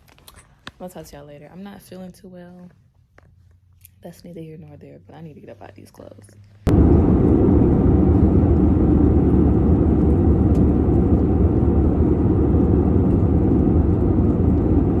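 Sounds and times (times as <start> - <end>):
loud low rumble: 6.7 - 15.0.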